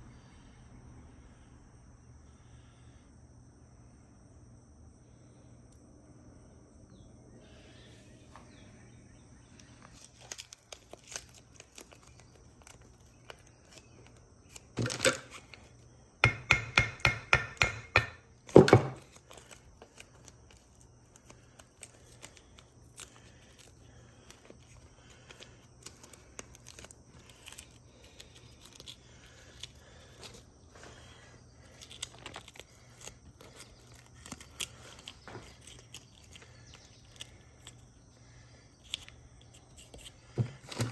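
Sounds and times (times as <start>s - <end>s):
faint steady hum: 0.0s - 40.9s
high insect trill: 0.0s - 40.9s
sharp knocks: 16.2s - 19.0s.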